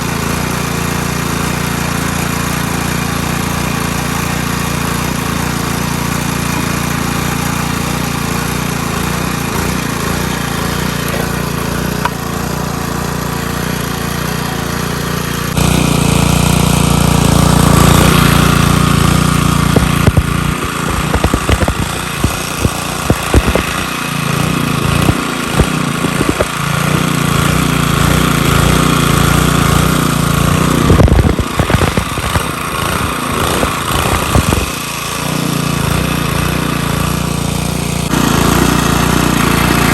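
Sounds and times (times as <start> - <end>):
small gasoline engine running: 0.0 - 39.9
sharp knocks and rattles: 18.0 - 27.0, 30.7 - 34.9.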